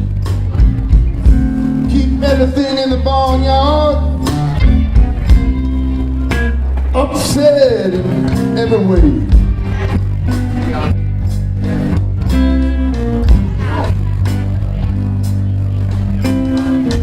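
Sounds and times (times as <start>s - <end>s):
bass notes: 0.0s - 17.0s
guitar: 0.0s - 17.0s
person singing: 1.8s - 4.8s
drum hits: 4.3s - 5.7s, 9.0s - 10.8s.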